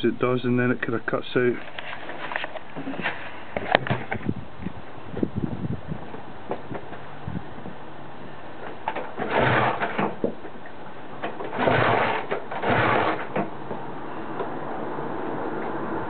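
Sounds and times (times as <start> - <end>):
motorcycle engine cranking: 8.7 - 10.3, 11.2 - 13.5.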